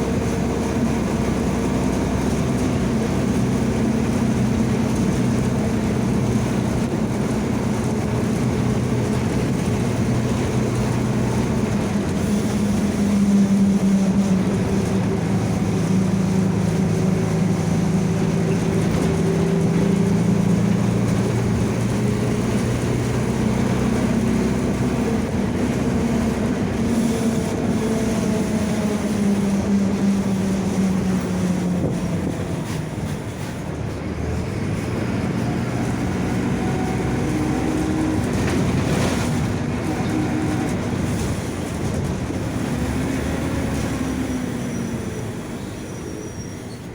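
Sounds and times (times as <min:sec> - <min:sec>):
bus differential growling: 0:00.0 - 0:46.9.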